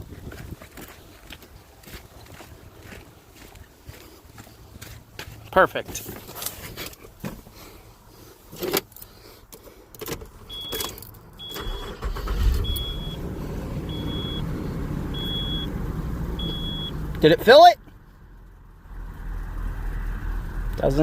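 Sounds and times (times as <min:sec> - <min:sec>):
vehicle engine starting and running: 0:10.0 - 0:21.0
high warning chime beeping: 0:10.5 - 0:13.2, 0:13.9 - 0:14.4, 0:15.1 - 0:15.7, 0:16.4 - 0:17.0.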